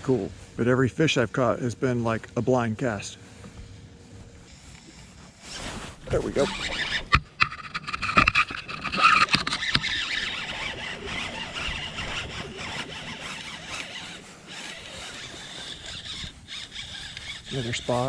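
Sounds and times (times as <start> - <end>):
fishing reel cranking: 6.0 - 18.0.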